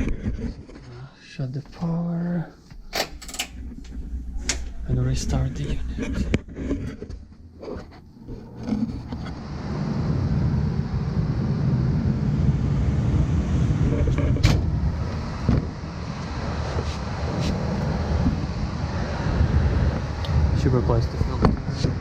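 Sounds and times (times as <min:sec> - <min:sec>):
furnace inducer motor humming: 0:00.0 - 0:22.0
furnace click: 0:02.7 - 0:04.8.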